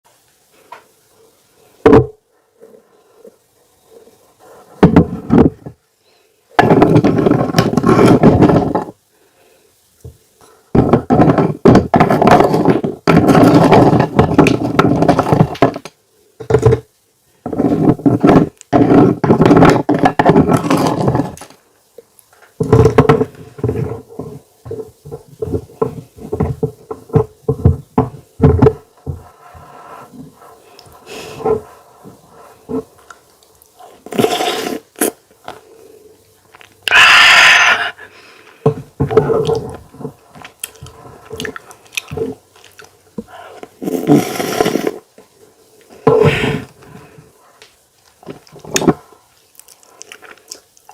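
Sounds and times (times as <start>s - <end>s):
close eating sounds: 28.7s - 50.9s.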